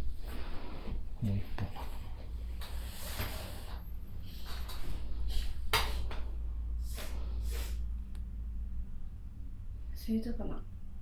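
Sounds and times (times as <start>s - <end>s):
woman sniffing hard: 6.8s - 7.9s.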